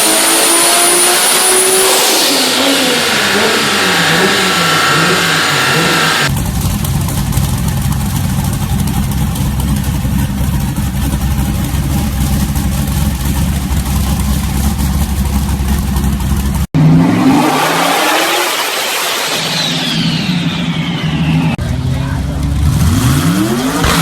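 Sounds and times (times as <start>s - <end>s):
car engine revving loudly: 0.0s - 6.4s, 10.7s - 24.0s
car engine rumbling: 0.0s - 24.0s
high whistle falling in pitch: 18.1s - 21.6s.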